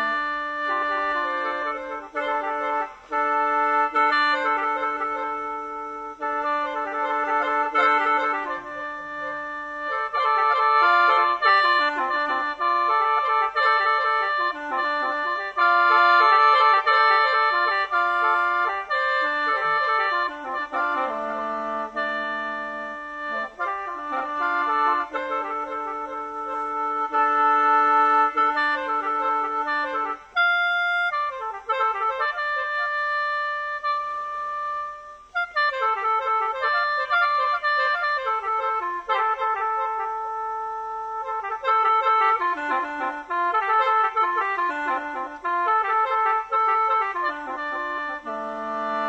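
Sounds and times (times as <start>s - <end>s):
free-reed mouth organ melody: 0.0s - 32.2s.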